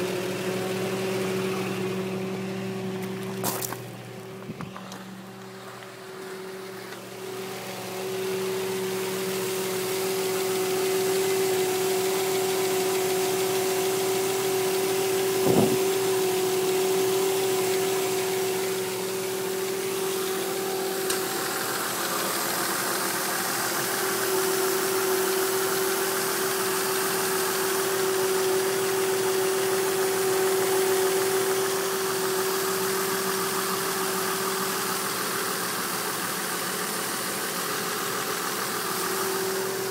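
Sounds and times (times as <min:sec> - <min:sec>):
car engine running: 0:00.0 - 0:39.9
steady buzz: 0:14.4 - 0:22.9.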